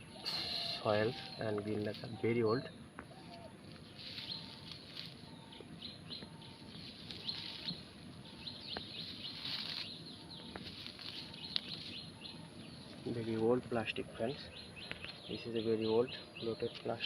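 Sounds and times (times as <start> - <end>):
small birds chirping: 0.0 - 17.0
light rustling: 3.1 - 13.8.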